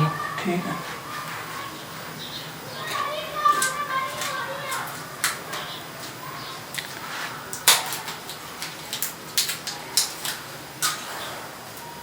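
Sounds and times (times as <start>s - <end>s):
small hard items clicking: 2.8s - 11.1s.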